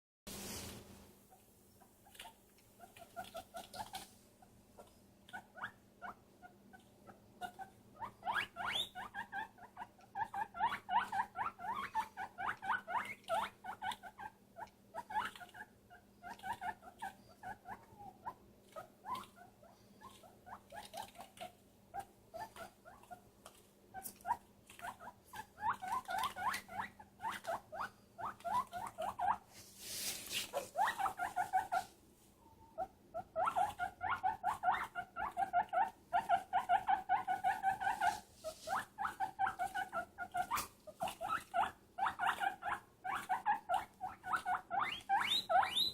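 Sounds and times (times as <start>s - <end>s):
rustle: 0.3s - 4.3s, 29.1s - 32.3s, 37.8s - 39.1s
small animal squeaking: 1.3s - 4.1s, 4.8s - 29.5s, 30.3s - 45.9s.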